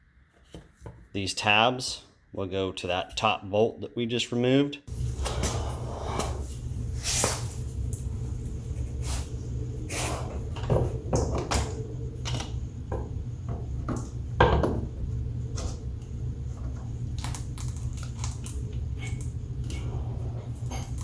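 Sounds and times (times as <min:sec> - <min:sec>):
steady low hum: 0:04.9 - 0:21.0.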